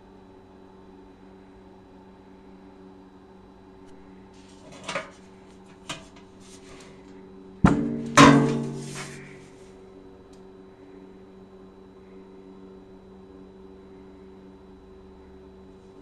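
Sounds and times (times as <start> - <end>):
steady electrical hum: 0.0 - 16.0.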